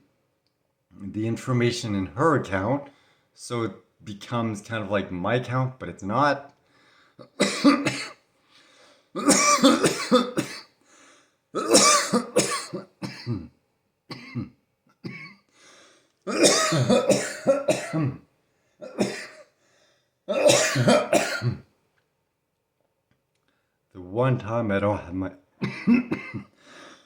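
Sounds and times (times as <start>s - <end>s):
person coughing: 7.2s - 8.2s, 9.2s - 10.7s, 11.6s - 13.5s, 14.1s - 15.4s, 16.3s - 18.2s, 18.8s - 19.5s, 20.3s - 21.6s, 25.6s - 26.9s.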